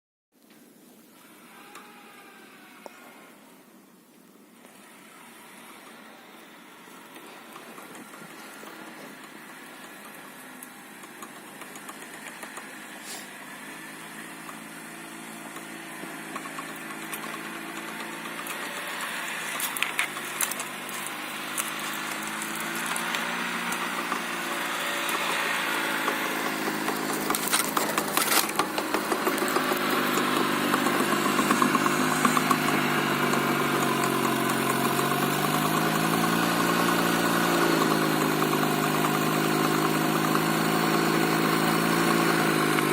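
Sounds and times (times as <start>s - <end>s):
off-road car engine running: 4.6s - 42.9s
sharp cracks and snaps: 26.9s - 30.3s.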